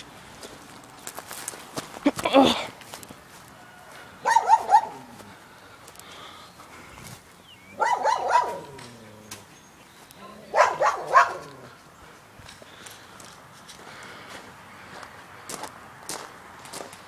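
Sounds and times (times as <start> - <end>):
dog barking: 4.2 - 5.1, 7.8 - 8.8, 10.2 - 11.7.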